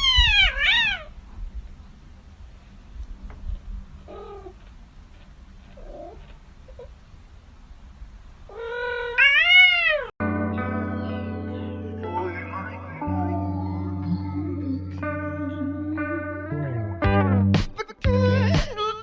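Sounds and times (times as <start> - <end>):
cat meowing: 0.0 - 1.2, 4.1 - 4.6, 8.5 - 10.1
cat yowling: 0.0 - 1.2, 4.1 - 4.6, 8.5 - 10.1
music: 10.2 - 19.0.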